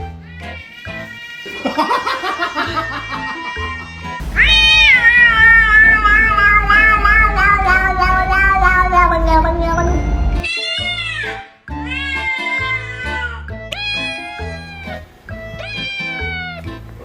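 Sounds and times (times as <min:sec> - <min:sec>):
background music: 0:01.6 - 0:17.0
cat yowling: 0:02.7 - 0:11.3, 0:11.9 - 0:16.7.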